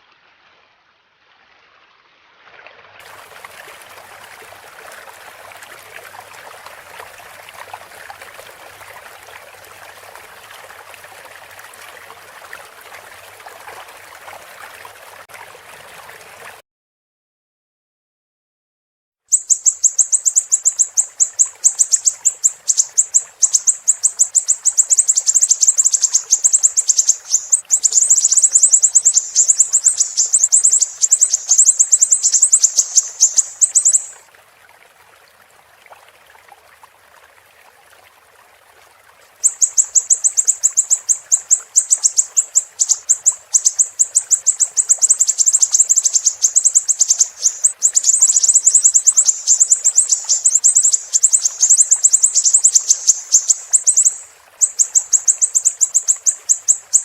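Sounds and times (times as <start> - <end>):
running water hiss: 3.0 - 16.6, 19.3 - 57.0
songbird chattering song: 19.3 - 34.2, 39.4 - 57.0.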